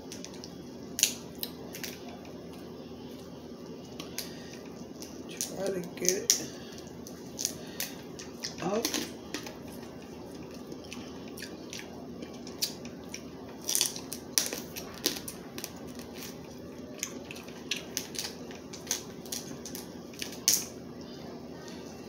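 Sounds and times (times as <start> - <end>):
crab shells cracking: 0.0 - 2.5, 3.9 - 20.8.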